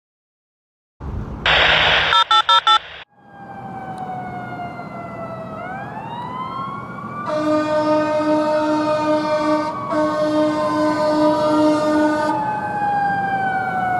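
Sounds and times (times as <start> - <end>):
emergency siren wailing: 1.5 - 13.9
fire engine air horn blasts: 7.2 - 12.4.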